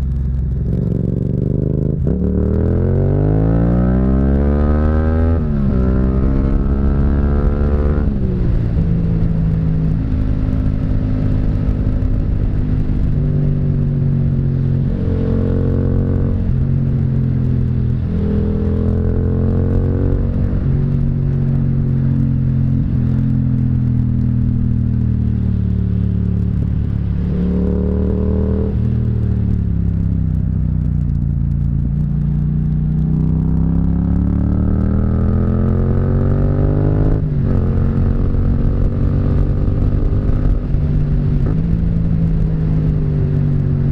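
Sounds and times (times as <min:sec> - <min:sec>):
motorcycle engine running: 0:00.0 - 0:03.4.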